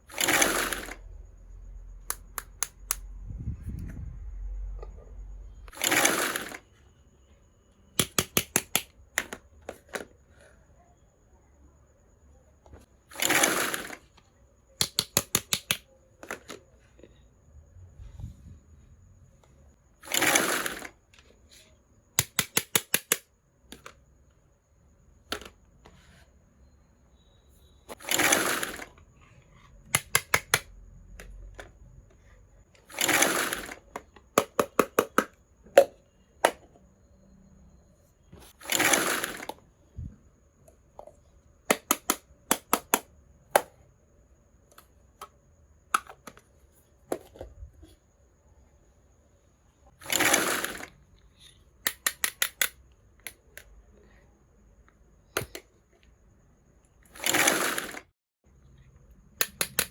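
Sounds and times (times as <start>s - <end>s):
small sharp clicks: 2.0s - 3.1s.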